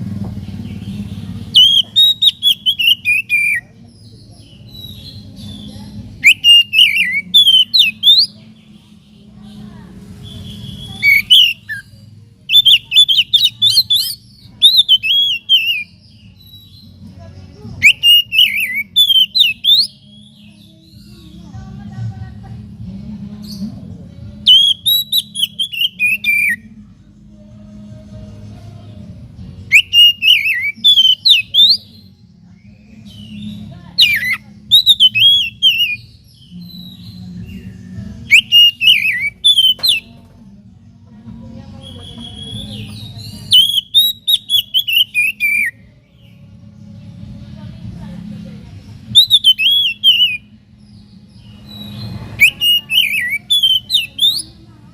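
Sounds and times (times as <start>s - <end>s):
bird whistling song: 0.6s - 8.4s, 10.2s - 17.0s, 17.8s - 21.4s, 24.4s - 26.7s, 29.7s - 40.2s, 41.8s - 46.4s, 49.0s - 54.6s.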